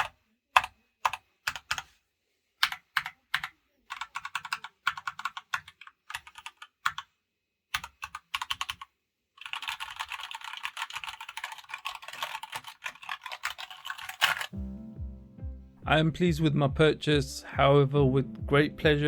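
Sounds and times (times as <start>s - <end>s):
mechanical keyboard typing: 0.0s - 1.9s, 2.6s - 7.1s, 7.7s - 14.6s.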